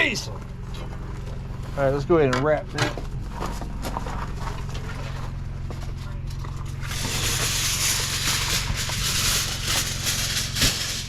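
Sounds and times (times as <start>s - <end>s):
steady low hum: 0.0s - 11.0s
aluminium foil crinkling: 3.7s - 11.0s.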